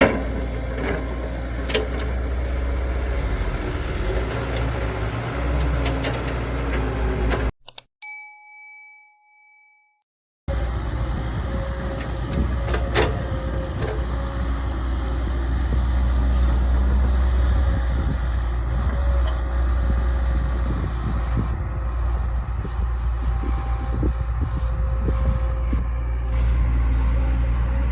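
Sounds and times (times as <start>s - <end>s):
heavy diesel machinery running: 0.0s - 7.5s, 10.5s - 27.9s
bell-like ding: 8.0s - 10.0s.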